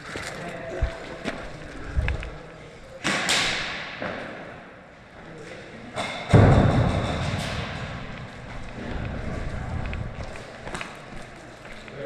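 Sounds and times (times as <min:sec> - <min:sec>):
loud thud: 0:06.3 - 0:09.0.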